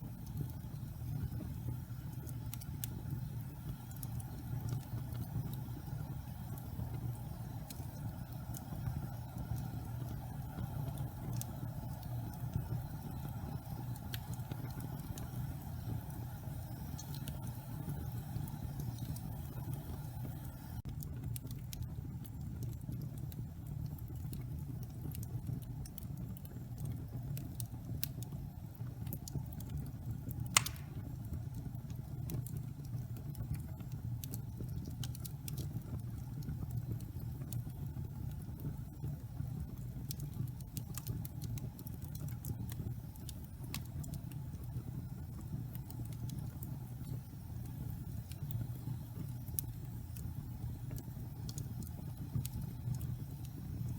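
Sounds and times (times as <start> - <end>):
fire crackles: 0.0 - 53.9
fire flames rumbling: 0.0 - 53.9
loud pop of fire: 30.5 - 31.2.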